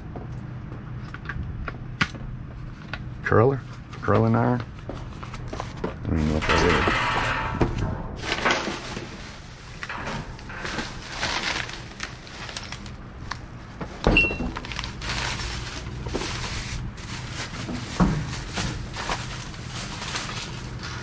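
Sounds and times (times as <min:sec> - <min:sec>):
rummaging in a dumpster: 0:03.8 - 0:21.0.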